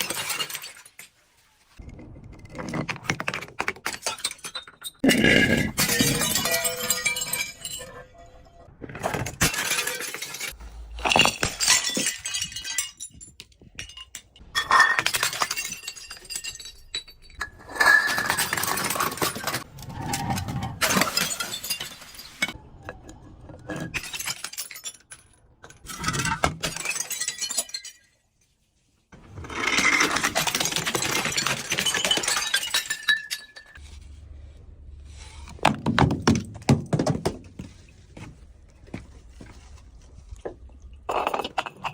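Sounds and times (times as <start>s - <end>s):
glass bottles breaking: 0.0s - 1.2s, 3.0s - 19.7s, 20.3s - 22.6s, 23.8s - 28.3s, 29.4s - 33.8s, 40.7s - 41.9s.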